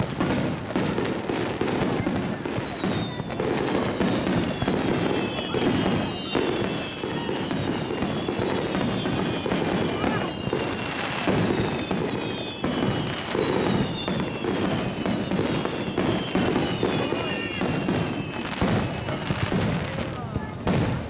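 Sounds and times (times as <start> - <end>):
fireworks bursting and crackling: 0.0 - 21.0
fireworks whistling: 0.0 - 21.0.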